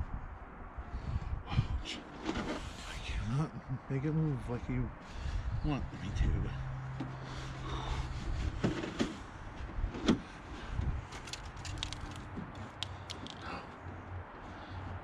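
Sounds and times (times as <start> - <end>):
hands clicking and knocking plastic: 11.2 - 13.5.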